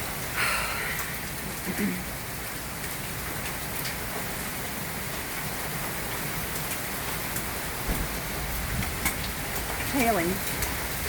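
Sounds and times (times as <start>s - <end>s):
heavy rain hissing: 0.0s - 3.2s
hailstones ticking: 0.0s - 11.0s.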